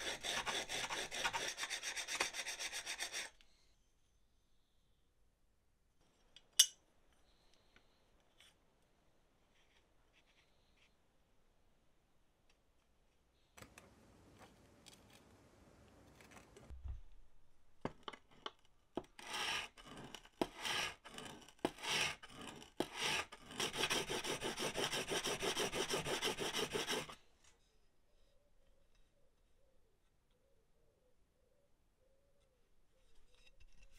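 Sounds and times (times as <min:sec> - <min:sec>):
plane iron scraping on abrasive: 0:19.2 - 0:27.2.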